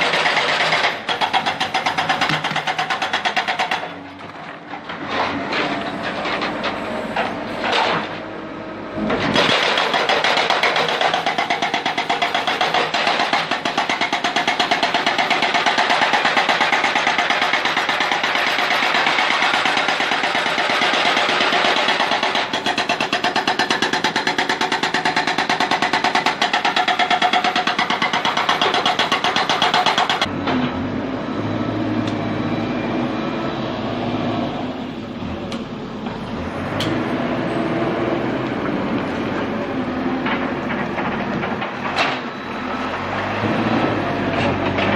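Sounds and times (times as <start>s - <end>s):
hydraulic breaker hammering stone: 0.0s - 8.2s, 9.0s - 30.3s, 39.0s - 44.9s
diesel engine running: 30.2s - 44.9s.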